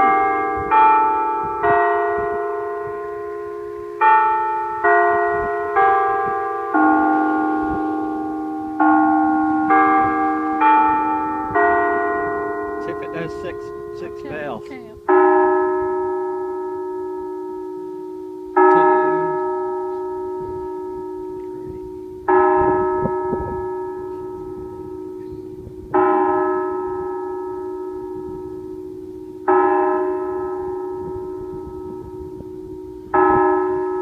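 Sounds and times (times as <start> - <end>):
church bell tolling: 0.0 - 34.0.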